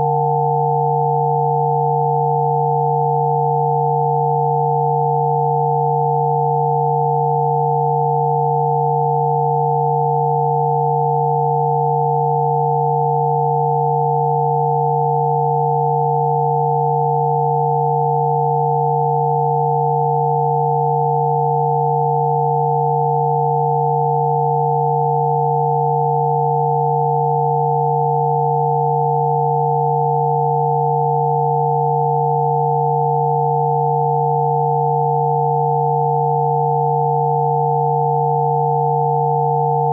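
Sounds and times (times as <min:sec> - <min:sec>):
high pure sine tones: 0:00.0 - 0:39.9.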